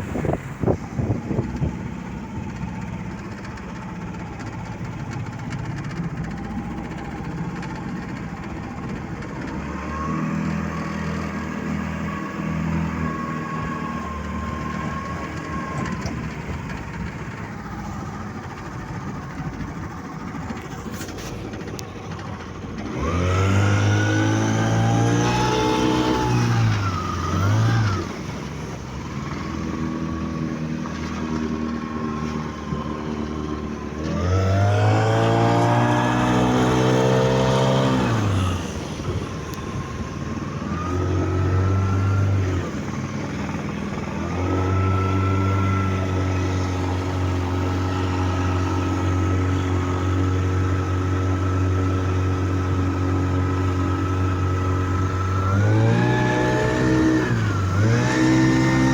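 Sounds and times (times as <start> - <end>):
outboard motor revving: 0.0 - 58.9.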